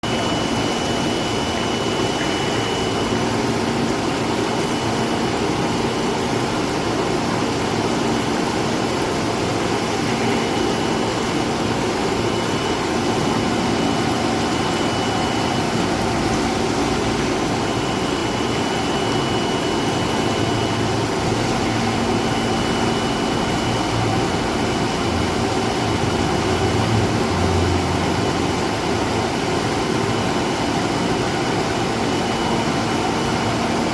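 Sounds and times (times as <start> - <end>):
vegetable washer machine running: 0.0 - 33.9
faint high whine: 9.6 - 28.6.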